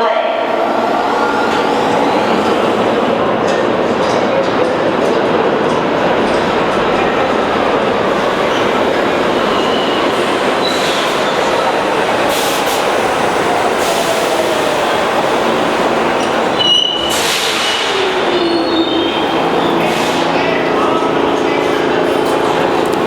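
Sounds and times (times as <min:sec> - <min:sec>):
subway train rumble: 0:00.0 - 0:23.0
high wheel squeals: 0:08.0 - 0:22.6.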